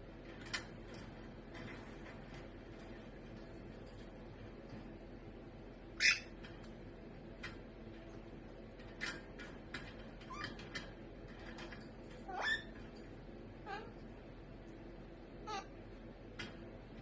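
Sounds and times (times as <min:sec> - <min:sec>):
parrot squawking and chirping: 0:06.0 - 0:06.4, 0:12.3 - 0:12.8, 0:15.4 - 0:15.8.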